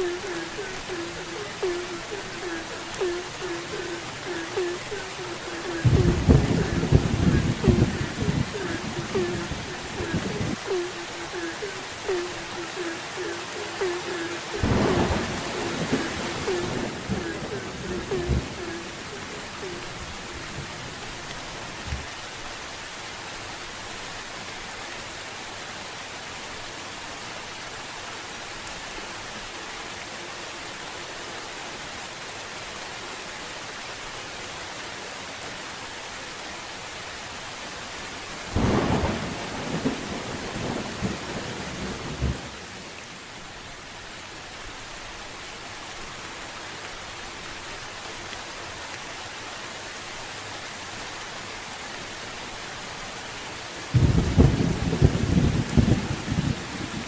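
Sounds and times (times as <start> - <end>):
thunder clap rumbling: 0.0 - 12.2, 12.8 - 20.8, 38.6 - 42.5, 53.9 - 57.0
steady rain: 0.0 - 57.0.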